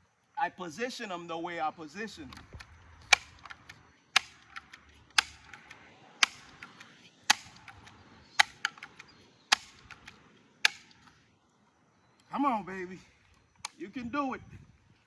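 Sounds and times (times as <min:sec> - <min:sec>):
sharp clicks: 0:02.2 - 0:11.2, 0:13.3 - 0:14.0.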